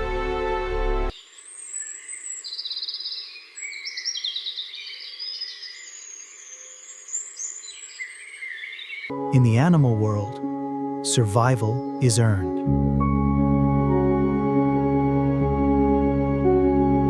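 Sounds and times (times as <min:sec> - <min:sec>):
songbirds chirping: 0:01.1 - 0:12.7
bird trills: 0:01.2 - 0:09.1.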